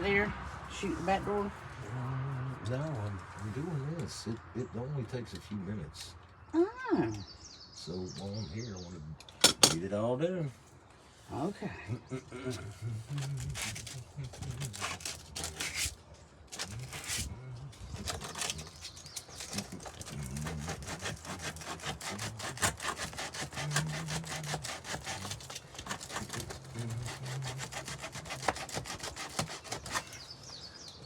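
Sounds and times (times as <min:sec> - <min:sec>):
hand tool rubbing abrasively: 0:18.0 - 0:30.2.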